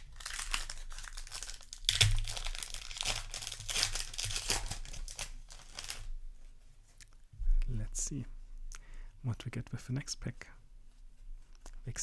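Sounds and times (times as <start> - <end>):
foil wrapper crinkling and tearing: 0.0 - 6.2.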